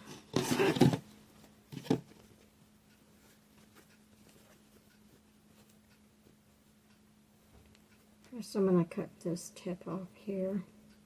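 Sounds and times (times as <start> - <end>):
low steady hum: 0.0 - 11.0
faint light ticks: 2.4 - 9.0.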